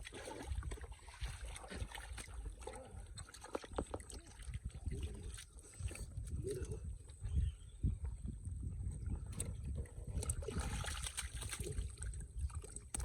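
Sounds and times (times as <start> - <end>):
shallow water splashing: 0.0 - 6.2, 9.2 - 13.0.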